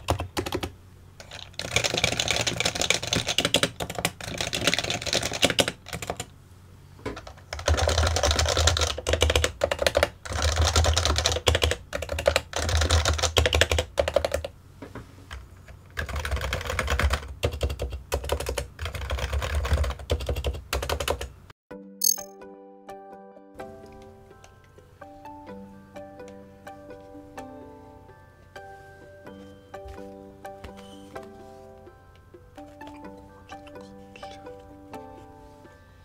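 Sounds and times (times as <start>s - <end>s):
fast keyboard typing: 0.0s - 6.3s, 7.2s - 14.5s, 15.9s - 21.3s
music: 21.7s - 36.0s.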